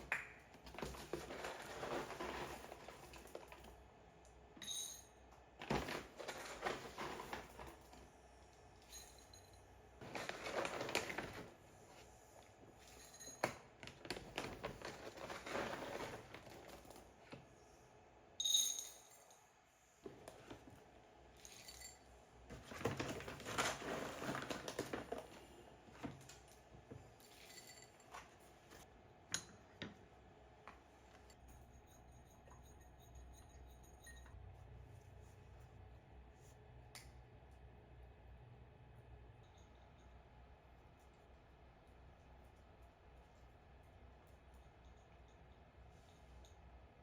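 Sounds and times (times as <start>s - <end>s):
short ringing clink: 18.4s - 19.3s.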